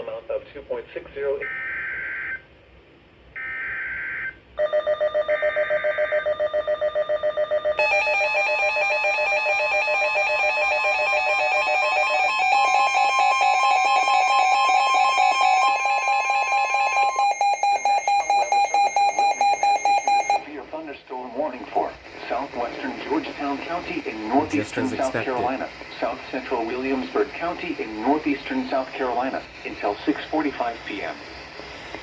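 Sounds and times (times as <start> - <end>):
rapid alarm beeps: 15.6 - 20.4.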